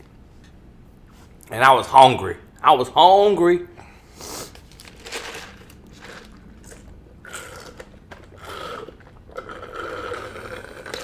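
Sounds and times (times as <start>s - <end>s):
person chewing food: 5.9s - 11.0s.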